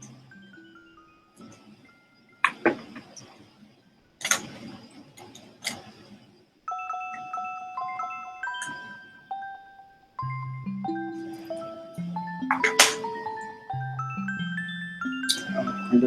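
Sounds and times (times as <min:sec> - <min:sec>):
melody of sustained notes: 0:00.0 - 0:02.5, 0:06.7 - 0:16.0.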